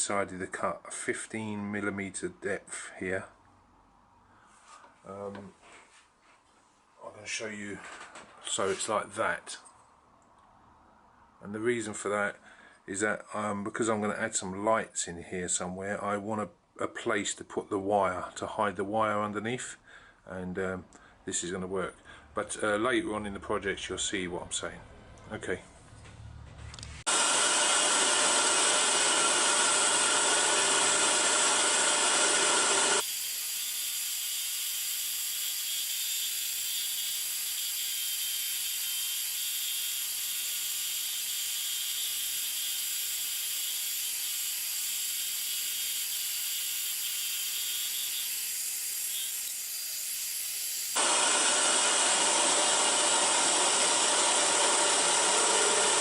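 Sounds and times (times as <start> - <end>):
scroll saw cutting plywood: 27.0 - 56.0.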